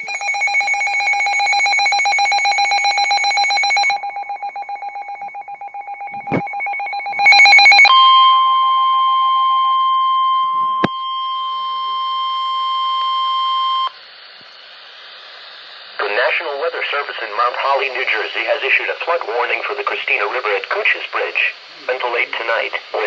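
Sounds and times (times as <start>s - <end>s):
pulsing electronic alarm trill: 0.0s - 13.9s
steady high alarm tone: 0.0s - 14.0s.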